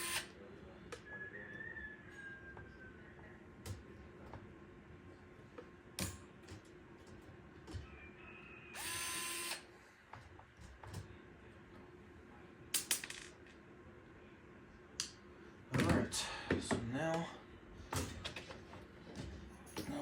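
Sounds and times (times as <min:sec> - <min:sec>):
electric screwdriver running: 0:00.0 - 0:00.3, 0:08.8 - 0:09.6.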